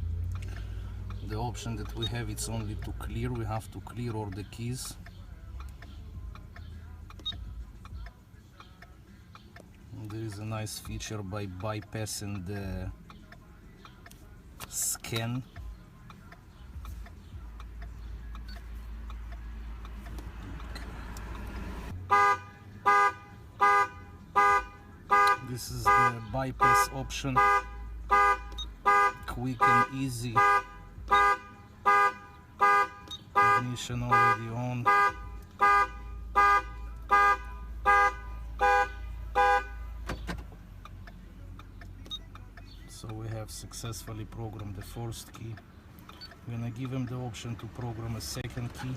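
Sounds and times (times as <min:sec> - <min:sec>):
click: 0:05.0 - 0:10.2, 0:13.1 - 0:19.2
car alarm horn honking: 0:22.0 - 0:40.1.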